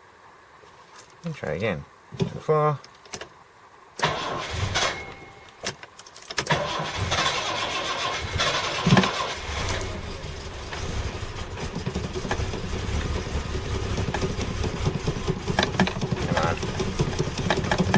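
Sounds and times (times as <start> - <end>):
car engine cranking and idling: 4.0 - 17.9.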